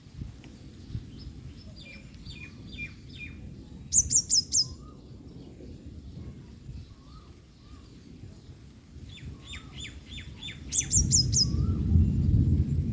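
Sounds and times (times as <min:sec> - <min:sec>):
bird chirping: 0:00.8 - 0:05.1, 0:09.5 - 0:11.8.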